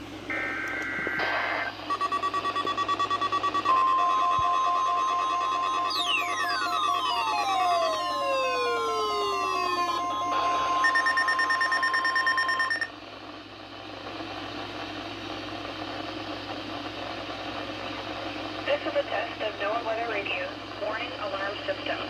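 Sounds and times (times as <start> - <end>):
steady warning alarm tone: 0.3 - 13.0
falling electronic sweeps: 3.7 - 12.3
radio broadcast hiss: 18.6 - 22.0.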